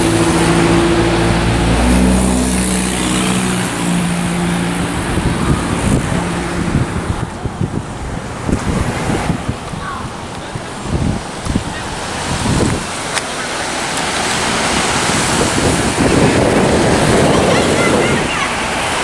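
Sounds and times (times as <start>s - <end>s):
road noise: 0.0s - 19.0s
wind buffeting microphone: 0.0s - 19.0s.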